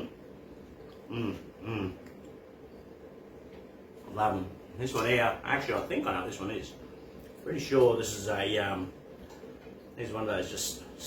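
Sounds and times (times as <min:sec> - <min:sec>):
man humming while eating: 0:00.9 - 0:02.3.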